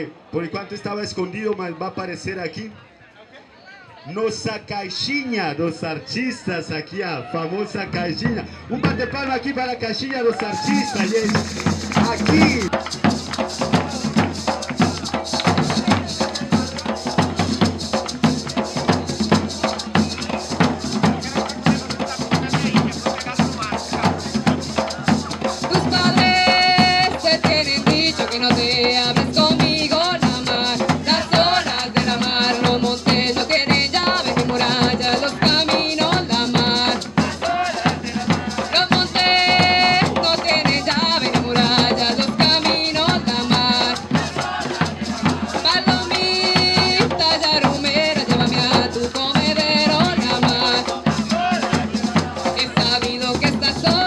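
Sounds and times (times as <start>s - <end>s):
maracas shaking: 10.4s - 54.0s
drums: 10.5s - 54.0s.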